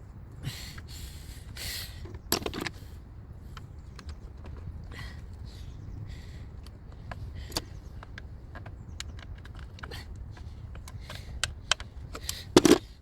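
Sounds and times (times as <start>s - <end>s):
plastic parts clicking and tapping: 6.6s - 12.9s.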